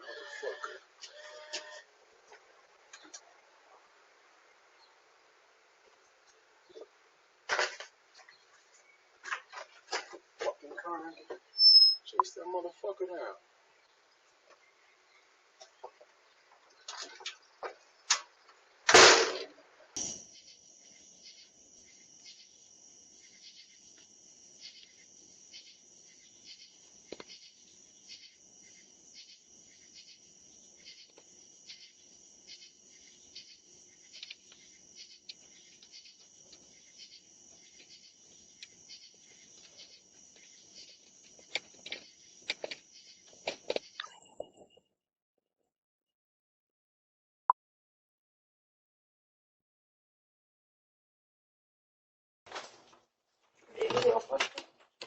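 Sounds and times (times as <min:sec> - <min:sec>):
insect chirping: 0:11.1 - 0:13.0, 0:20.0 - 0:44.5.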